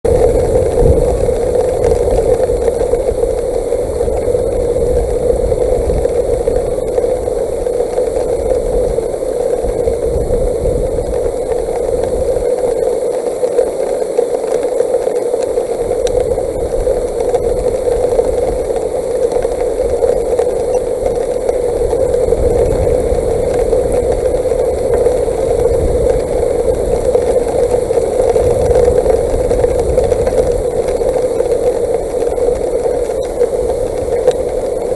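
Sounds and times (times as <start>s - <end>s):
gusty wind rumble: 0.0s - 13.8s, 15.6s - 34.9s
hail and wind hiss: 0.1s - 34.9s
hailstones clicking: 0.1s - 34.9s.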